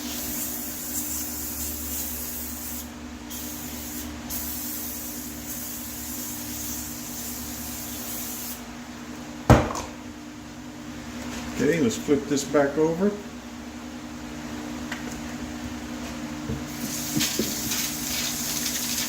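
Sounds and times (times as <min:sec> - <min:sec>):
aerosol can spraying hiss: 0:16.8 - 0:19.0.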